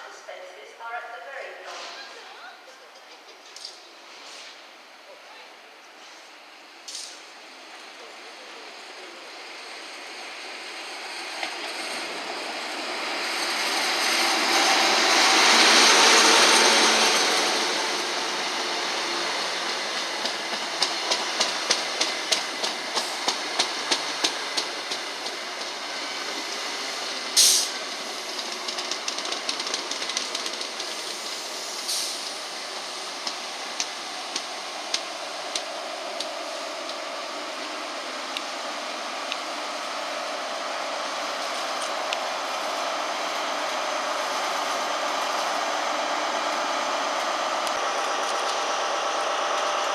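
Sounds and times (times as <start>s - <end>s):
train passing: 0.0s - 49.9s
wheels clacking over rail joints: 11.3s - 31.3s
sharp burst of hiss: 26.3s - 28.4s, 30.8s - 33.2s.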